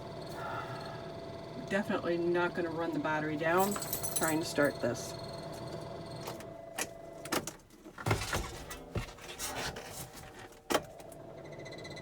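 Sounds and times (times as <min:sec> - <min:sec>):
steady hum: 0:00.0 - 0:07.4
clicks and knocks of controls: 0:05.5 - 0:11.2.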